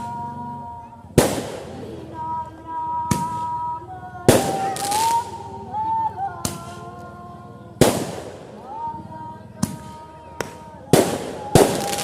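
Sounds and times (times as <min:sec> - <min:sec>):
fireworks bangs: 0:01.1 - 0:02.0, 0:04.3 - 0:05.4, 0:07.8 - 0:08.6, 0:09.6 - 0:12.0.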